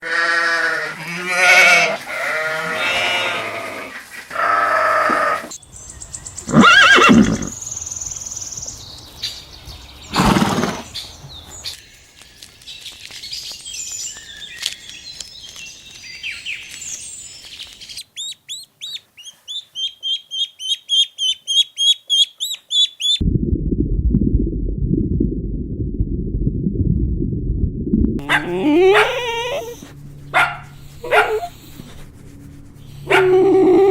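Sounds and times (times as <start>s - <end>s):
farm animals calling: 0.0s - 5.6s, 17.9s - 23.2s, 28.2s - 31.9s, 33.0s - 33.9s
low dull noise: 23.2s - 28.2s.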